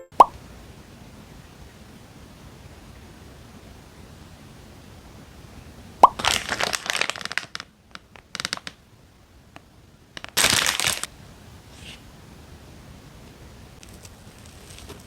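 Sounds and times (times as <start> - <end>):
plastic packaging crinkling: 6.2 - 8.8, 10.2 - 11.1, 13.8 - 15.0
plastic ripping: 6.2 - 8.8, 10.2 - 11.1.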